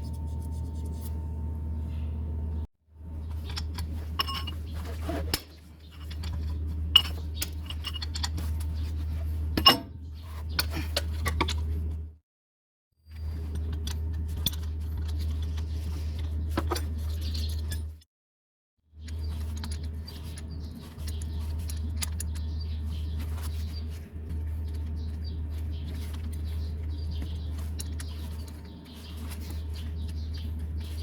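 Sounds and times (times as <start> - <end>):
steady low hum: 0.0 - 12.2, 19.0 - 31.0
metal tools clinking on engine parts: 3.2 - 10.0.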